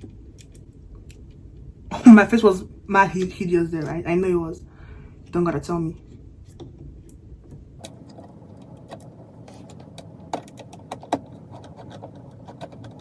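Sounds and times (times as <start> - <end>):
computer parts clicking and tapping: 7.8 - 13.0.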